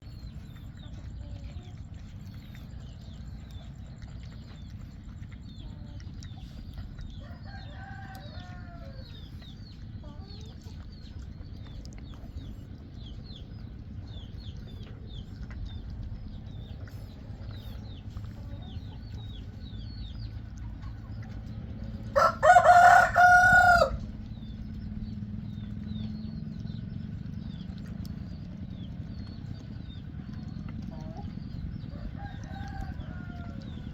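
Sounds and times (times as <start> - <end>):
low outdoor rumble: 0.0 - 33.9
rooster crowing: 22.2 - 24.0.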